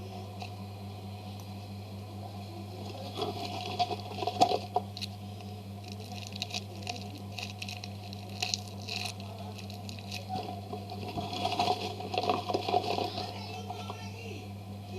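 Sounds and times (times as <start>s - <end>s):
low electrical hum: 0.0s - 14.9s
foam toys crackling and rustling: 2.8s - 14.1s.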